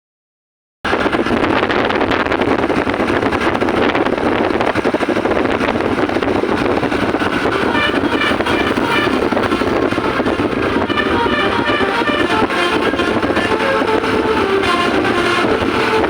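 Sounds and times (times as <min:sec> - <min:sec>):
bus diesel engine running: 0:01.1 - 0:16.0
melodic multi-note bus horn: 0:06.9 - 0:16.0.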